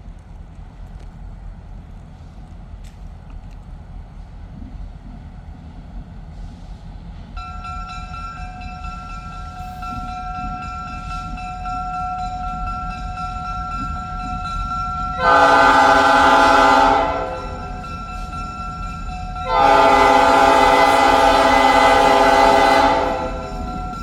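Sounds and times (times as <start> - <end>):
train horn: 15.2 - 17.9, 19.4 - 24.0.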